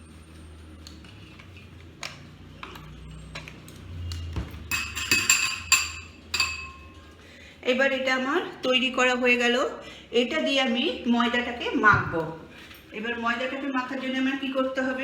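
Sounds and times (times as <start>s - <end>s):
metal utensil clinking in a bowl: 2.6s - 7.1s.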